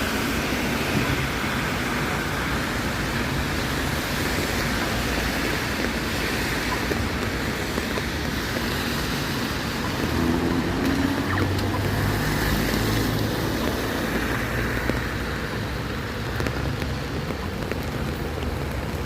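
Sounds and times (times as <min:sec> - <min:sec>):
vehicle engine hum: 0:00.0 - 0:19.0.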